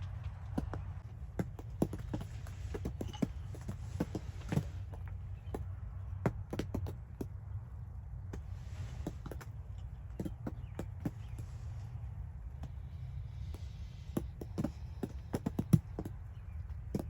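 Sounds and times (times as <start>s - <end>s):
sharp taps and clicks: 0.0s - 7.4s.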